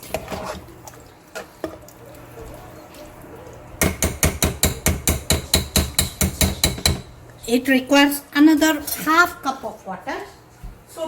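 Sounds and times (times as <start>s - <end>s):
spoon knocking against pot: 3.8s - 7.2s.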